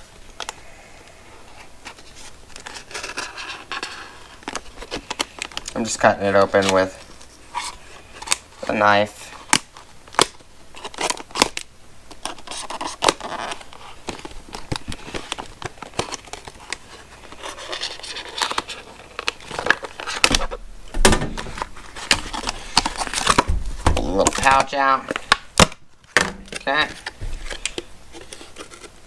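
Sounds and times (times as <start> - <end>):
plastic crinkling: 1.5 - 29.0
knife cutting plastic packaging: 9.4 - 20.6, 21.2 - 29.0
heavy thump: 20.3 - 24.2.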